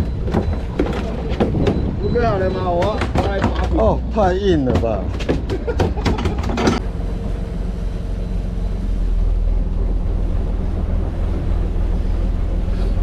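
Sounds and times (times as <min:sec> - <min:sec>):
boat engine droning: 0:00.0 - 0:05.8, 0:06.6 - 0:13.0
wind: 0:00.0 - 0:13.0
water noise: 0:06.8 - 0:13.0.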